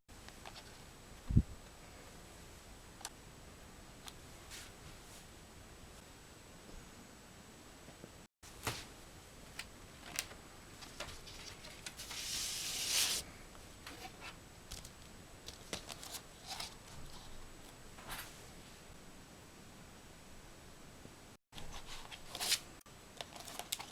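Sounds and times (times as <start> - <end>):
paper swish: 12.0 - 13.2.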